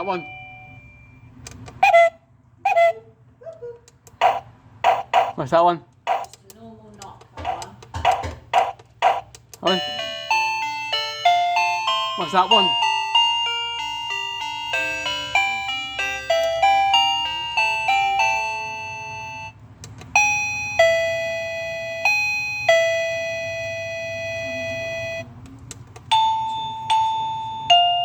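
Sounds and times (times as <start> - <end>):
doorbell chime melody: 0.0 - 1.3, 9.6 - 19.6, 20.2 - 25.2, 26.1 - 28.0
two-note ding-dong chime: 0.0 - 1.3, 9.7 - 19.6, 20.2 - 25.2, 26.1 - 28.0.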